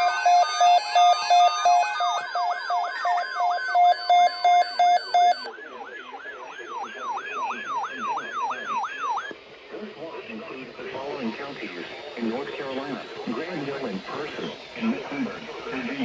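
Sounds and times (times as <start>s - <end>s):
yelping siren sweeps: 0.0s - 9.3s
repeated electronic beeps: 0.0s - 9.4s.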